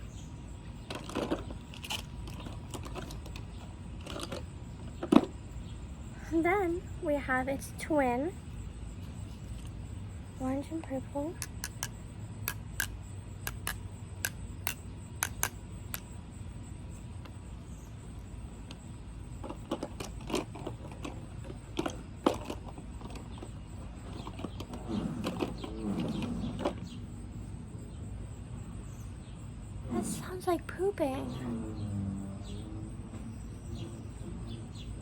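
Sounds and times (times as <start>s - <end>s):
plastic tubes clicking and tapping: 11.4s - 16.1s.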